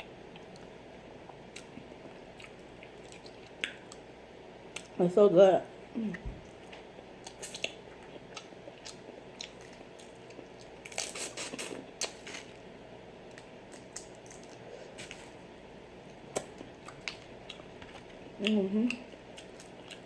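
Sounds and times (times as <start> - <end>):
person chewing and smacking: 0.0 - 4.1, 4.7 - 5.0, 6.1 - 12.6, 16.0 - 20.0.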